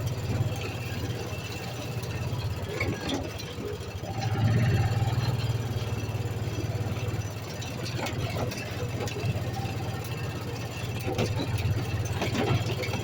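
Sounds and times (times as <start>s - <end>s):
atv engine running: 0.0s - 13.0s
knocks and rattles: 10.8s - 13.0s.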